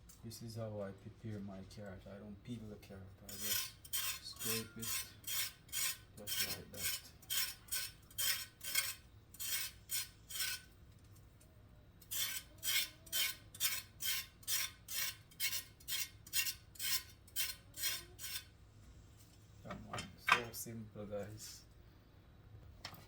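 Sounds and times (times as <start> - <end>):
knife scraping carrot: 3.2 - 10.7, 12.0 - 18.5.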